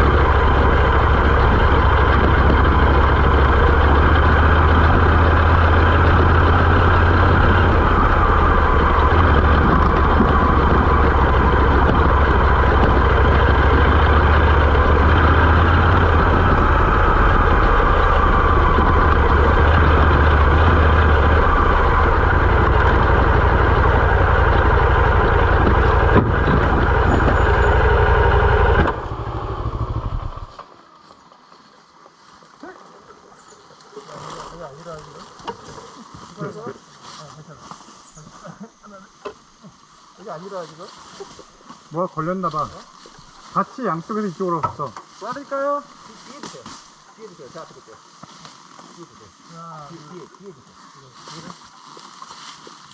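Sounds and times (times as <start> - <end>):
continuous rushing noise: 0.0 - 30.6
motorcycle engine drone: 0.0 - 52.9.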